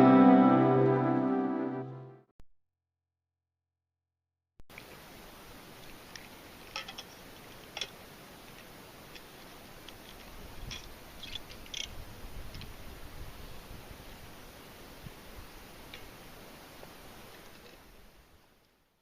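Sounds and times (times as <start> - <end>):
background hiss: 4.7 - 19.0.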